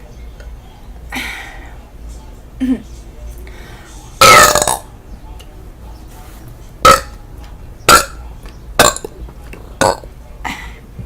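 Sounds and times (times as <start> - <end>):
woman burping: 4.2 - 4.8, 8.8 - 9.1.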